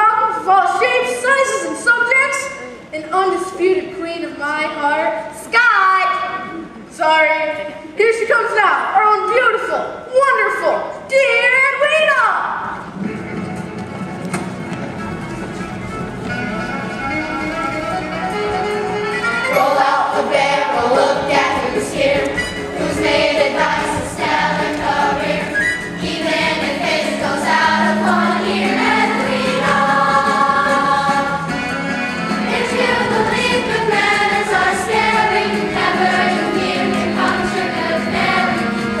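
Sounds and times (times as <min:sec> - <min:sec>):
instrumental accompaniment: 0:12.8 - 0:39.0
group singing musical theatre song: 0:19.5 - 0:39.0.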